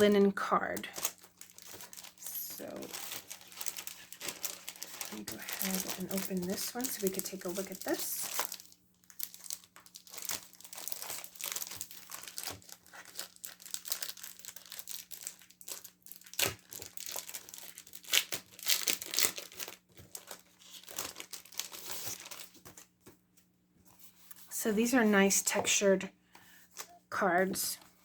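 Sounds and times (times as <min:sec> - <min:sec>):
packaging crinkling and tearing: 0:00.8 - 0:23.0.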